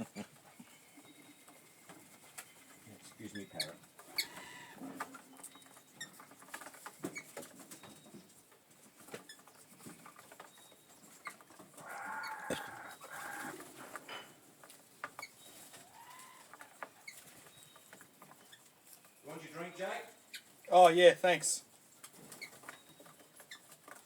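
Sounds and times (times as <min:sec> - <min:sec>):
parrots calling: 0:03.4 - 0:04.8, 0:11.8 - 0:14.3.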